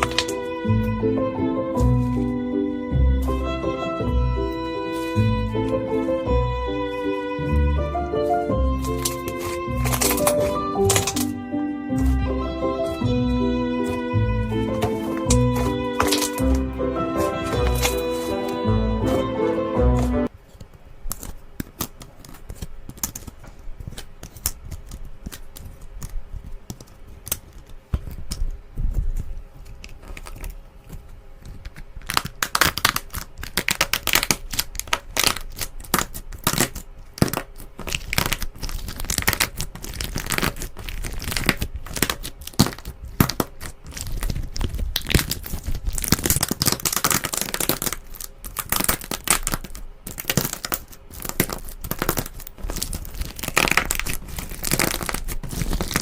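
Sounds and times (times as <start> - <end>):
slime popping and crackling: 0.0 - 0.9, 1.8 - 11.4, 13.8 - 19.2, 21.0 - 56.0.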